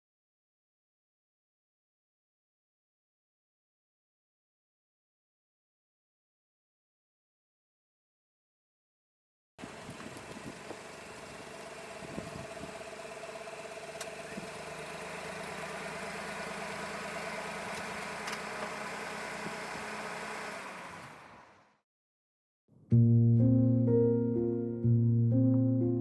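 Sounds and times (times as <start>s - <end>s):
engine humming: 9.6s - 21.8s.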